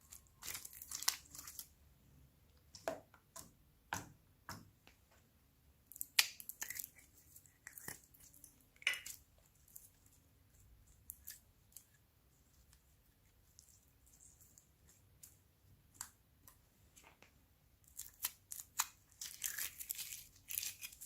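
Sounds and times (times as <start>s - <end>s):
slime squishing with sticky clicks: 5.9s - 9.9s.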